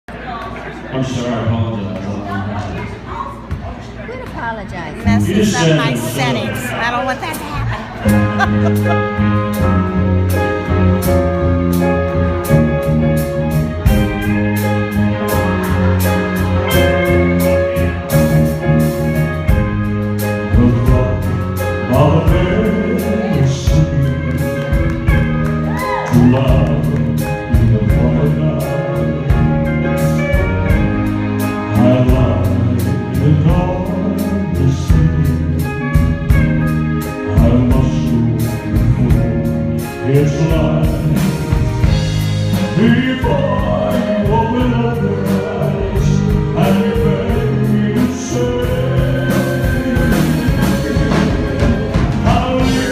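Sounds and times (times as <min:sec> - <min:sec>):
band playing a slow ballad: 0:00.1 - 0:52.9
person singing: 0:20.2 - 0:36.4, 0:37.0 - 0:52.9.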